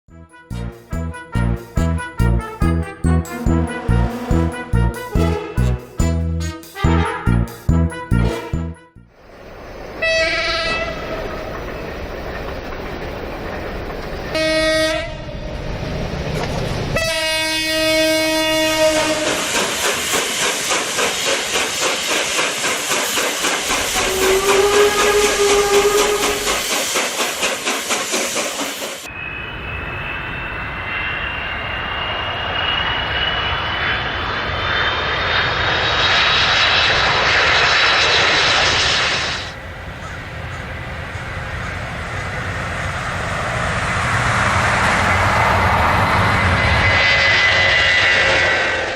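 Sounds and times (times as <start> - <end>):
train horn blasts: 0.1 - 9.0, 10.0 - 11.3, 14.3 - 15.3, 17.0 - 19.6, 23.8 - 26.6
train wheels clickety-clack: 18.1 - 29.1.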